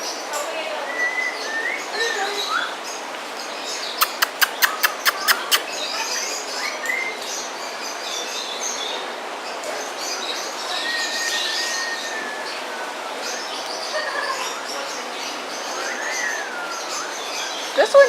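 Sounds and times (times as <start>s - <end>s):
birds chirping: 0.0s - 18.0s
sharp clicks: 4.0s - 5.6s.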